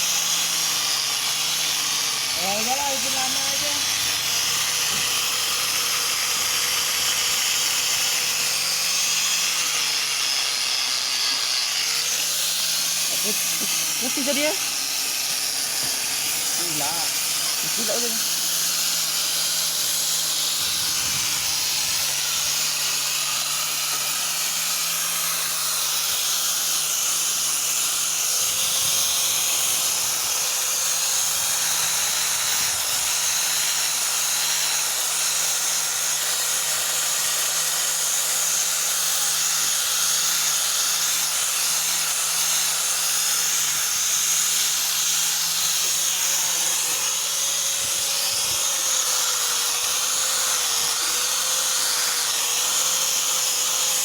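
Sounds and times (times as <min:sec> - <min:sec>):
small power tool hissing: 0:00.0 - 0:54.0.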